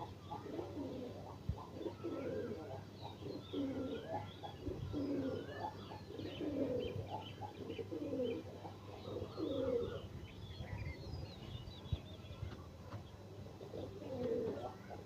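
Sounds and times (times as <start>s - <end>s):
dove cooing: 0.0s - 10.1s, 13.6s - 15.0s
small birds chirping: 0.0s - 15.0s.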